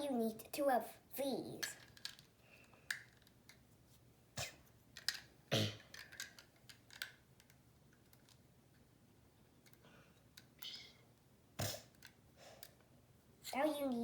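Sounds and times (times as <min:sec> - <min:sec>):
plastic bricks clicking and clattering: 0:01.6 - 0:02.3, 0:02.9 - 0:03.6, 0:04.9 - 0:08.4.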